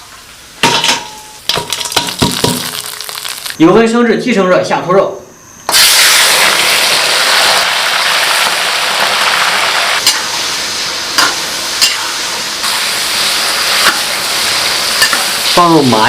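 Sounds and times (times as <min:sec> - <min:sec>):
meat sizzling in hot oil: 0:01.5 - 0:03.6, 0:05.7 - 0:16.0.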